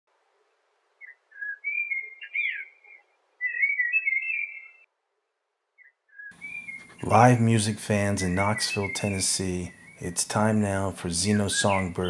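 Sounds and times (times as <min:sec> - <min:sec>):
whistled chirps and warbles: 0:01.0 - 0:04.9, 0:05.8 - 0:10.2, 0:11.2 - 0:12.0.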